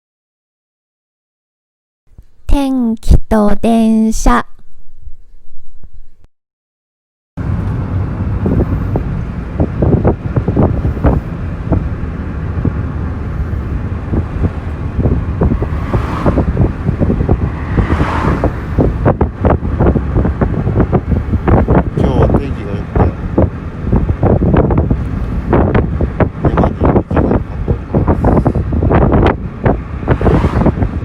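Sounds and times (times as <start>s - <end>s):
wind buffeting microphone: 7.4s - 31.0s.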